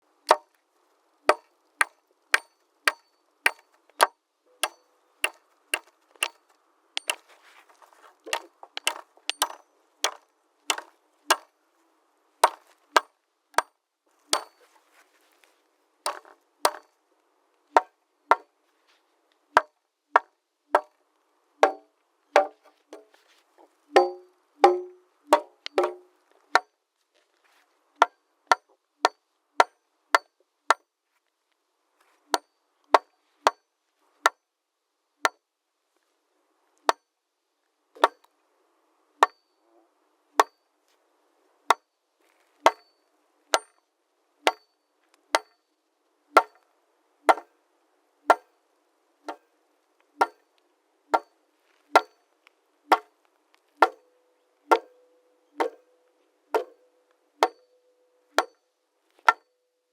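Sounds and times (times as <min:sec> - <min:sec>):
faint steady hum: 0:00.0 - 0:59.9
hammer striking wood: 0:01.3 - 0:06.4, 0:07.0 - 0:07.2, 0:08.3 - 0:11.5, 0:12.4 - 0:13.7, 0:14.3 - 0:14.6, 0:16.1 - 0:16.8, 0:17.8 - 0:18.5, 0:19.6 - 0:20.9, 0:21.6 - 0:23.1, 0:23.9 - 0:26.7, 0:42.6 - 0:42.9, 0:44.5 - 0:44.7, 0:52.0 - 0:52.2, 0:55.6 - 0:55.8, 0:56.6 - 0:56.8.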